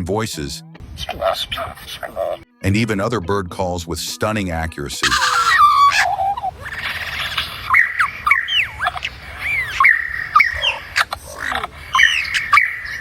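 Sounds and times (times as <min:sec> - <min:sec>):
lyrebird mimicking bird calls: 0:05.0 - 0:13.0.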